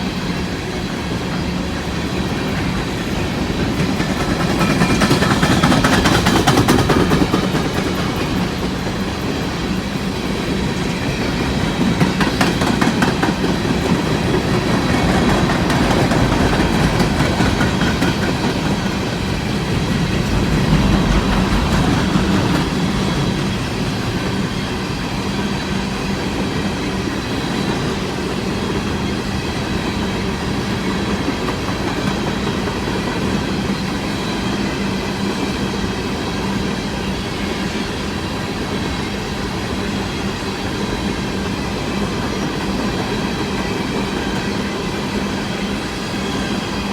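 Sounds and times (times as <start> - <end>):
train cars rolling: 0.0 - 46.9
wheels clacking over rail joints: 1.0 - 33.5.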